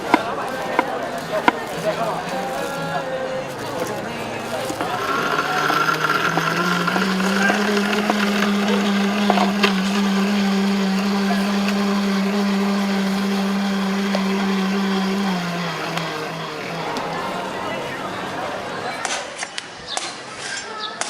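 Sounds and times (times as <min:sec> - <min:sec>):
electric blender motor running: 0:03.8 - 0:17.6.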